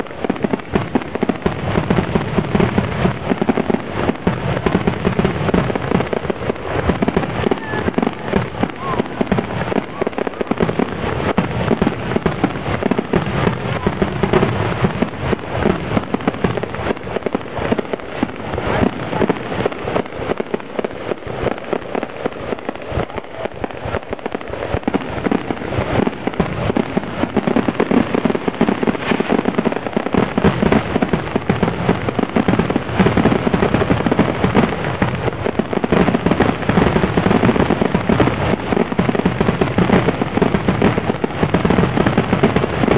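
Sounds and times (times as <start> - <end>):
fireworks bursting and crackling: 0.0 - 42.9.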